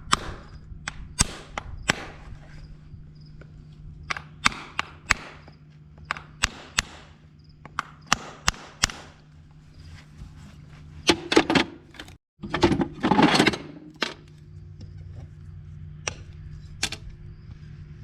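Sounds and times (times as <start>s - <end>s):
steady low hum: 0.0s - 18.0s
sharp knocks with rasping tail: 4.1s - 9.2s.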